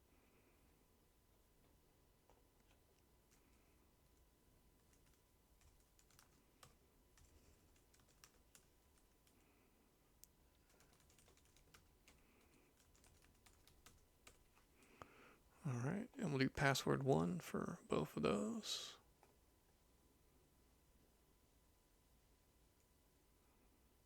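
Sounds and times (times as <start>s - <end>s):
quiet room hiss: 0.0s - 24.0s
computer keyboard typing: 4.8s - 9.4s, 10.6s - 14.8s.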